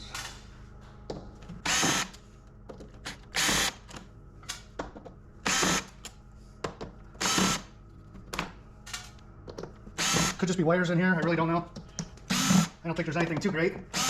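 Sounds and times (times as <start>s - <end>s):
power drill bursts: 7.2s - 7.6s, 10.0s - 10.4s, 12.3s - 12.8s.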